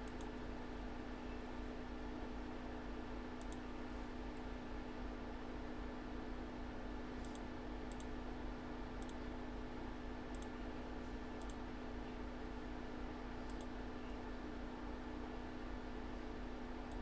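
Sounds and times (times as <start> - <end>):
low electrical hum: 0.0 - 17.0
faint sharp clicks: 7.2 - 8.1, 13.5 - 13.7.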